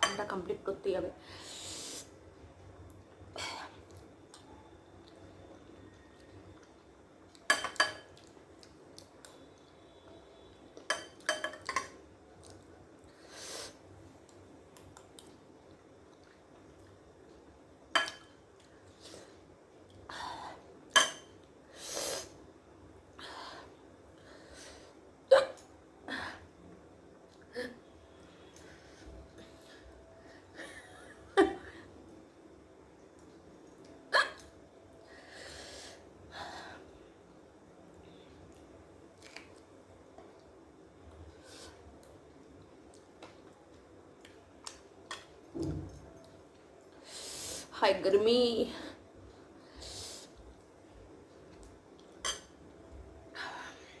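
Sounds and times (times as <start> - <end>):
cutlery clinking on dishware: 7.5 - 8.1, 10.9 - 12.0, 52.2 - 52.6.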